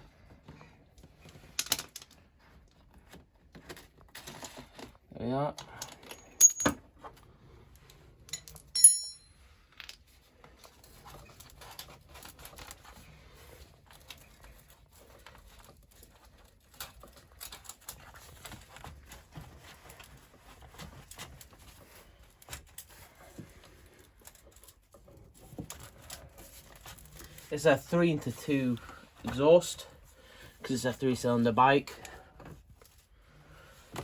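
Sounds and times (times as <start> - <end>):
sharp ringing metal clink: 6.1 - 6.8, 8.8 - 9.4.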